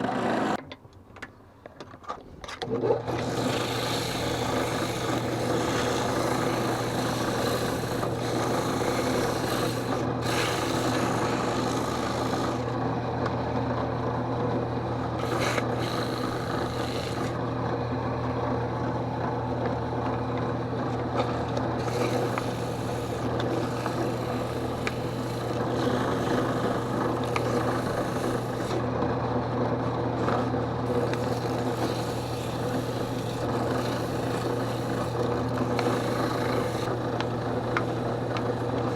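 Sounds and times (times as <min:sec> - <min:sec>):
drill press motor humming: 0:02.7 - 0:38.9
wood rasping against abrasive: 0:03.1 - 0:12.8, 0:15.2 - 0:17.4, 0:21.2 - 0:28.9, 0:30.2 - 0:38.9.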